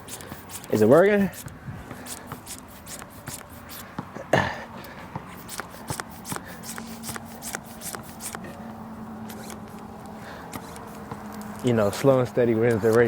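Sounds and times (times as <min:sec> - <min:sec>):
hand pump clicking and rattling: 0:00.0 - 0:04.0, 0:04.8 - 0:13.0.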